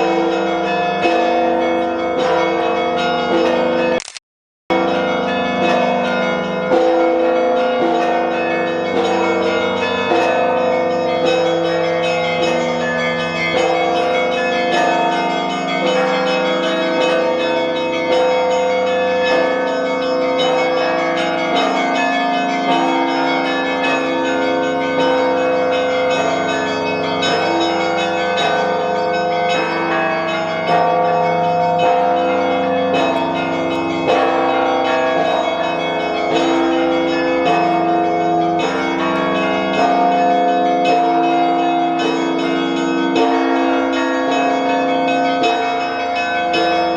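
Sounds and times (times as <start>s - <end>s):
church bells ringing: 0.0s - 4.0s, 4.7s - 46.9s.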